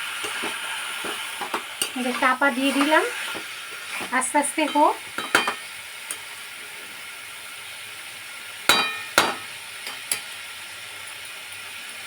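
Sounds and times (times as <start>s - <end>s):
meat sizzling in a pot: 0.0s - 12.0s
metal cookware clinking: 0.2s - 3.1s, 4.0s - 6.2s, 8.7s - 10.4s.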